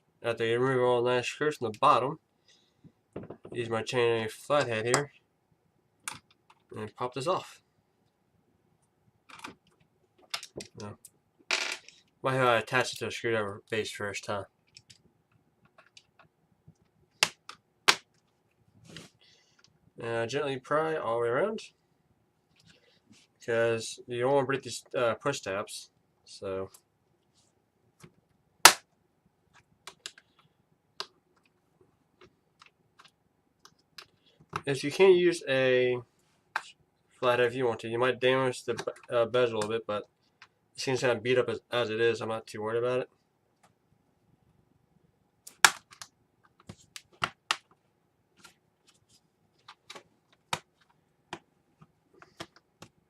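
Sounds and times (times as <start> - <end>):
sharp plastic snap: 45.5 - 46.1.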